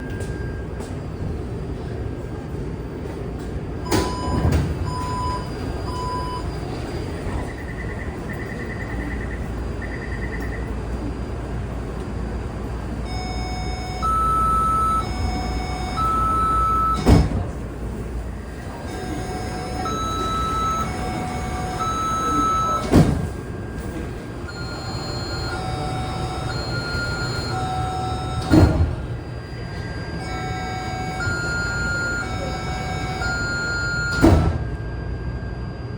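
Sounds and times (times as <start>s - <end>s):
low hum of train: 0.0s - 35.9s
short beeps: 7.4s - 10.8s, 13.1s - 17.4s, 18.9s - 28.6s, 29.4s - 35.9s.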